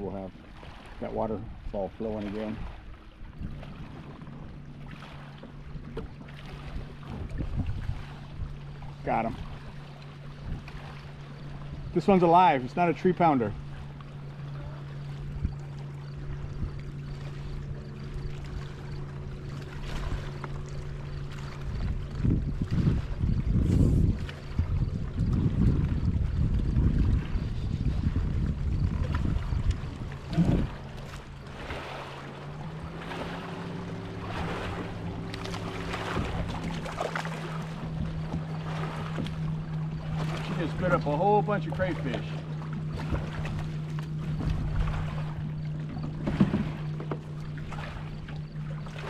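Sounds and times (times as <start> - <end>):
low motor hum under water: 0.0 - 49.0
wind buffeting microphone: 1.0 - 4.8, 5.4 - 12.4, 13.1 - 49.0
rumble: 13.6 - 40.7, 41.9 - 49.0.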